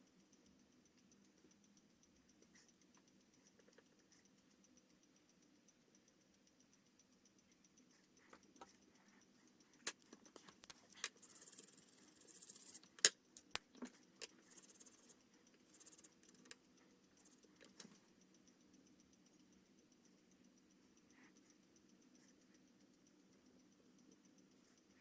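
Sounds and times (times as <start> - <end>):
small clicks and taps: 0.0 - 20.0
pen scratching on paper: 10.7 - 12.8, 14.4 - 16.5.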